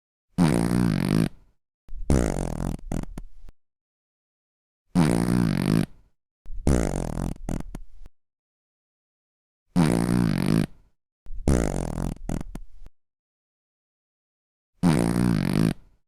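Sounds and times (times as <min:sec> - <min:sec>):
fart sound effect: 0:14.8 - 0:15.8.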